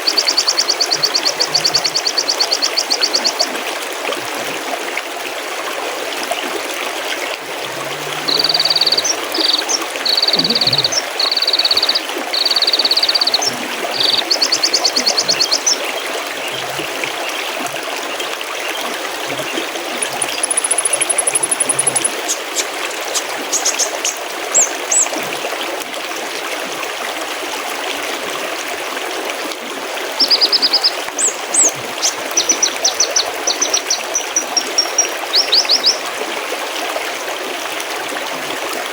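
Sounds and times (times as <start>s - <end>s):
small birds calling: 0.0s - 3.4s, 8.0s - 18.2s, 18.8s - 25.1s
stream babbling: 0.0s - 38.9s.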